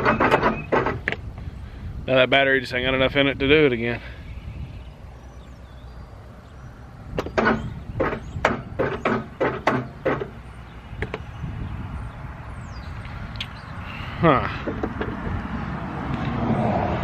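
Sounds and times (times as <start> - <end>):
engine cranking slowly: 0.0 - 1.2, 7.2 - 10.6.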